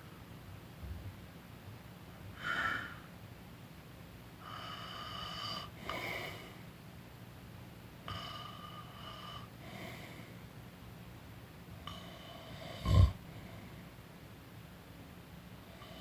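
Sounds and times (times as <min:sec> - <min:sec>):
person snoring: 0:12.5 - 0:13.2.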